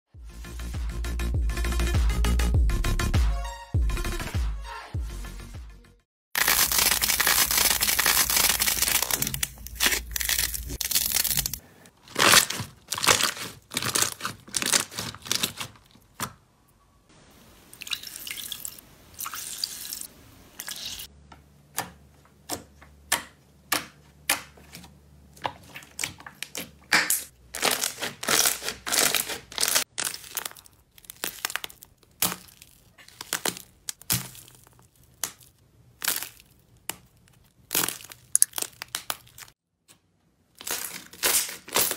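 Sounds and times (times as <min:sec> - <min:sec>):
slime crackling and popping: 0:06.4 - 0:11.6, 0:12.2 - 0:15.7, 0:25.8 - 0:39.6, 0:40.6 - 0:41.9.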